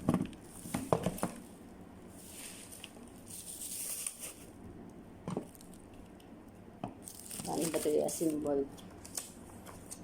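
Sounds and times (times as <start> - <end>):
plastic packaging rustling: 7.0 - 10.0.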